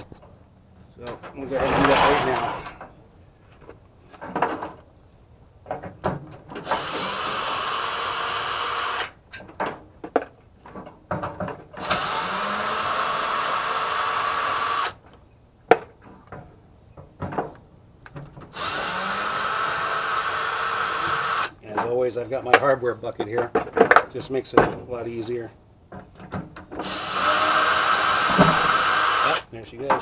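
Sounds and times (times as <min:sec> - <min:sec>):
power drill driving out screws: 0:01.5 - 0:02.8, 0:06.6 - 0:09.2, 0:11.8 - 0:15.0, 0:18.5 - 0:21.5, 0:26.8 - 0:29.5.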